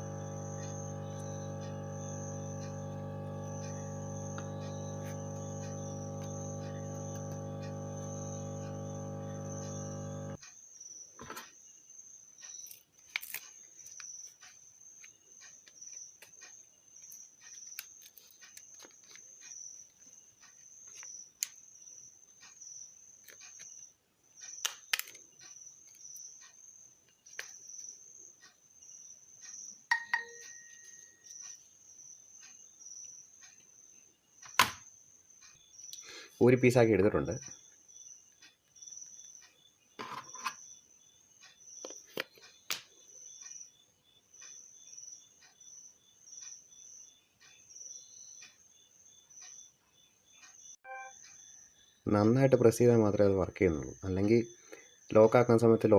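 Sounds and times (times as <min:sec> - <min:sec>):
high pulsing chirp: 0:00.0 - 0:10.4, 0:50.8 - 0:52.4
steady hum: 0:00.0 - 0:10.4.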